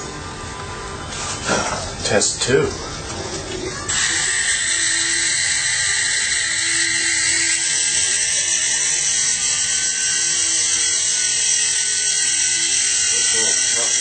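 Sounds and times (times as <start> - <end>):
rc helicopter rotor whirring: 3.9 - 14.0.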